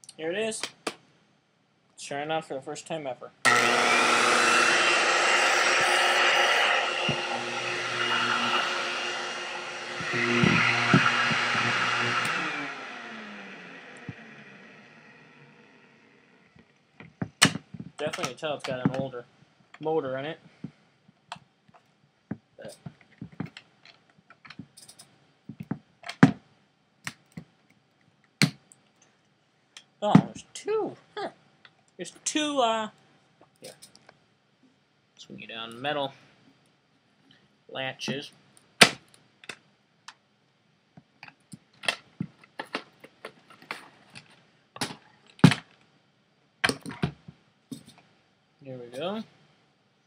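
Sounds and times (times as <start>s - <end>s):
vacuum parts clicking and knocking: 3.5s - 12.7s, 41.2s - 45.8s, 46.6s - 48.0s.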